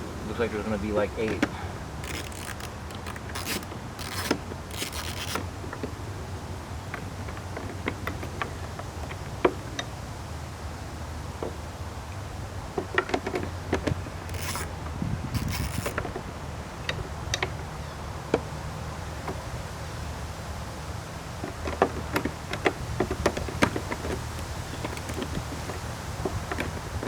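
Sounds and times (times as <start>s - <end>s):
metallic clicks of hand tools: 2.0s - 5.4s.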